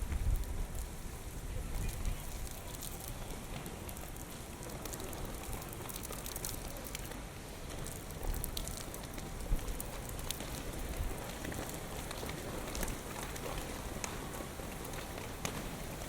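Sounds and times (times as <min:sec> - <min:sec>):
wind gusts on microphone: 0:00.0 - 0:02.6.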